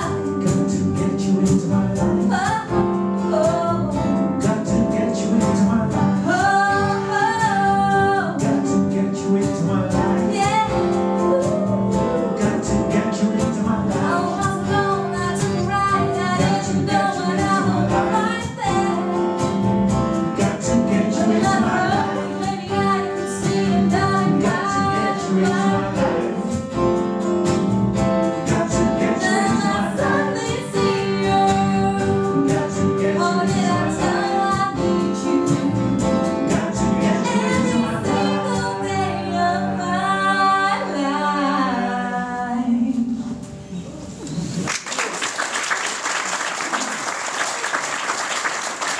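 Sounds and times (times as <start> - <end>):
guitar accompaniment: 0.0 - 44.7
women singing: 2.1 - 4.0, 6.2 - 8.8, 10.1 - 12.5, 13.9 - 19.4, 20.4 - 26.6, 28.5 - 35.8, 36.4 - 43.4.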